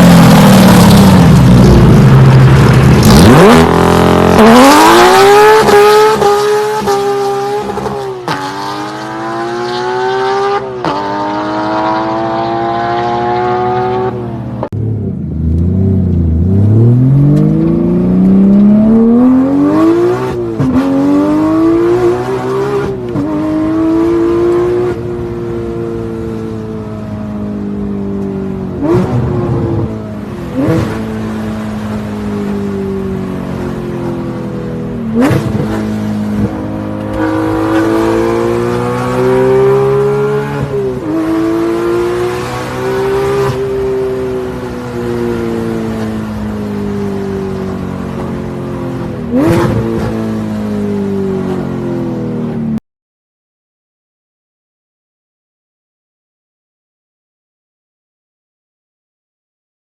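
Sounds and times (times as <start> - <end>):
car engine accelerating through gears: 0.0 - 25.0, 35.1 - 47.0.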